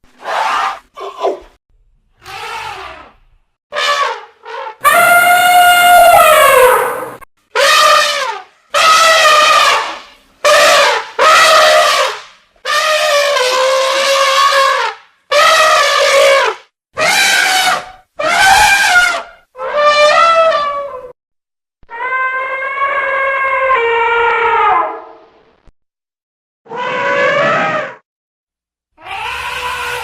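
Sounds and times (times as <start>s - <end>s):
elephant trumpeting: 2.2s - 3.2s, 3.8s - 21.1s, 26.7s - 28.0s, 29.0s - 30.0s.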